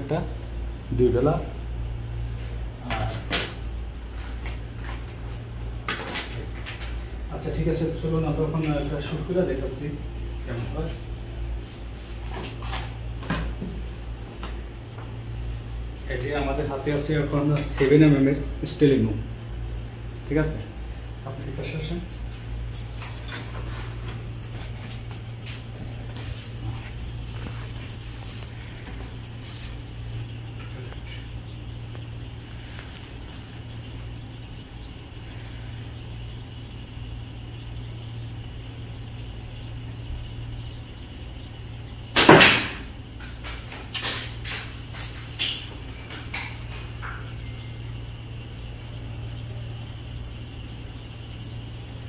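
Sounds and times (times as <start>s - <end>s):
steady low hum: 0.0s - 52.0s
slingshot shot smack: 42.2s - 42.8s.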